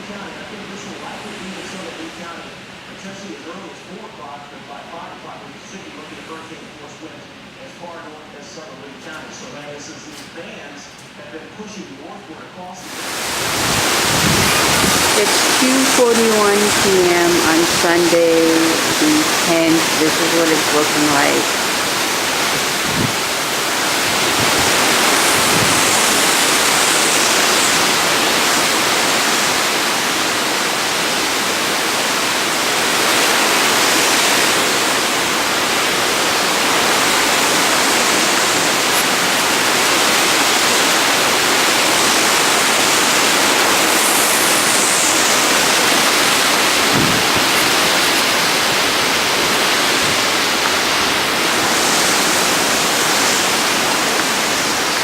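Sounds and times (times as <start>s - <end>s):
rain: 0.0s - 3.3s, 12.8s - 55.0s
wind: 12.9s - 16.1s, 21.4s - 55.0s.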